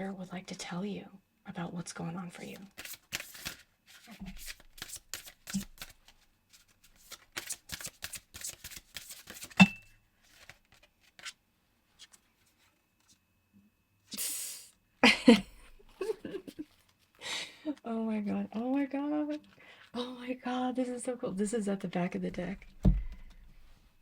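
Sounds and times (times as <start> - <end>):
cards being shuffled: 2.4 - 9.6, 10.2 - 11.4.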